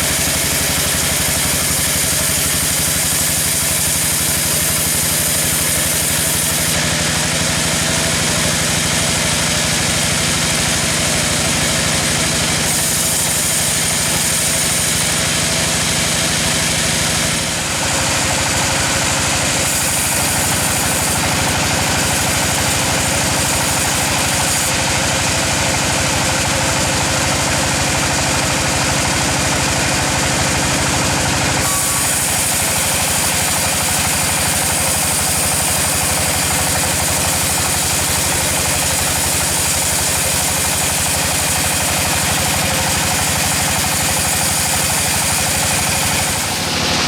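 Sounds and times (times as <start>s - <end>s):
saw cutting log hiss: 0.0s - 9.0s, 10.9s - 24.8s, 31.5s - 47.0s
engine-driven saw running: 0.0s - 47.0s.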